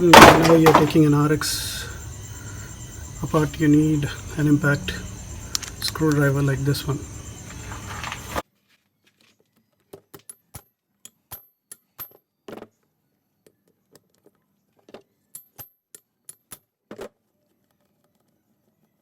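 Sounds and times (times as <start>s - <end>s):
metal tools clinking: 0.0s - 8.4s.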